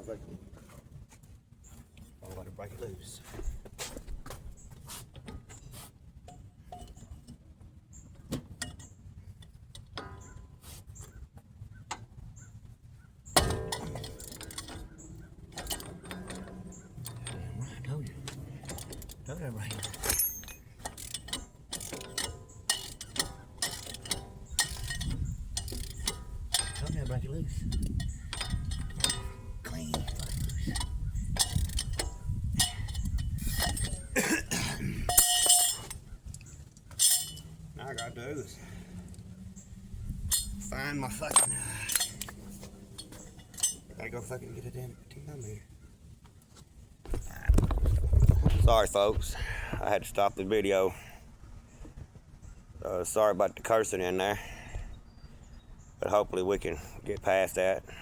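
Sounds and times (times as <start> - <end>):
metallic clatter: 6.3 - 10.6, 13.2 - 38.7, 40.1 - 44.3
metal hand tools clinking: 13.4 - 36.0, 36.9 - 38.4, 40.2 - 44.2
man coughing: 34.1 - 35.1.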